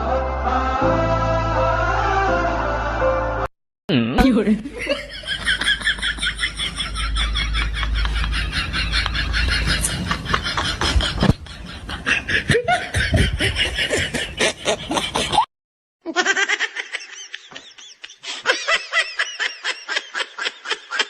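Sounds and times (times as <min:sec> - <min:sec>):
person laughing: 0:04.6 - 0:15.5, 0:16.1 - 0:21.0.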